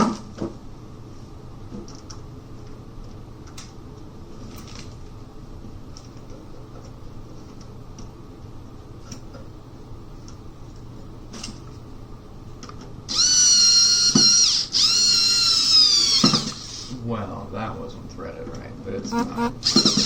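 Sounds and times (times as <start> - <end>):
electric screwdriver whining: 13.1 - 17.0, 19.4 - 20.0.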